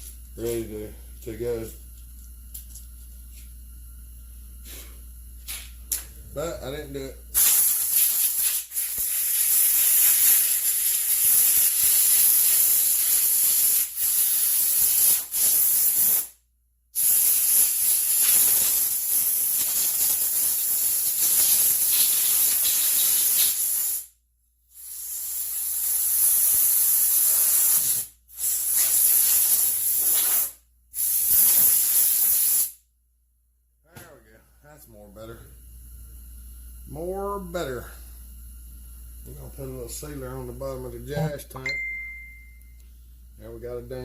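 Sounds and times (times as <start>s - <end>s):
compressed air hissing from nozzle: 4.6s - 5.7s, 7.3s - 16.3s, 17.0s - 24.1s, 24.7s - 32.8s.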